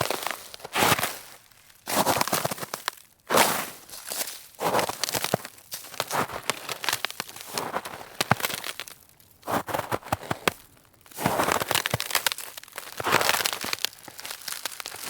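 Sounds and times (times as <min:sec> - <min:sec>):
snow shovel scraping snow: 0:00.7 - 0:01.1, 0:03.3 - 0:03.8, 0:09.5 - 0:10.5, 0:11.2 - 0:11.7.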